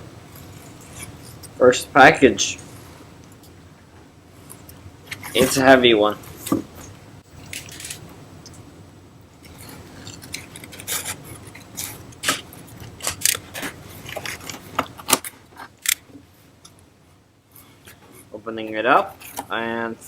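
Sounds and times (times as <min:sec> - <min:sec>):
packaging crinkling and rustling: 0:09.5 - 0:15.9.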